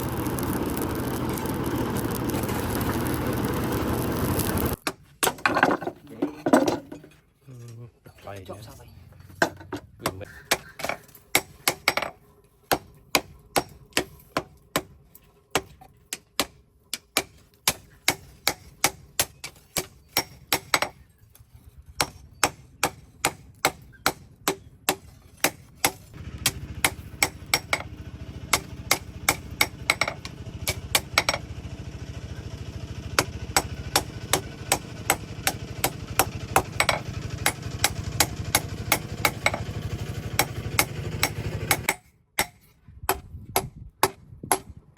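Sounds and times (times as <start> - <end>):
low machine hum: 0.0 - 4.8, 26.2 - 41.9.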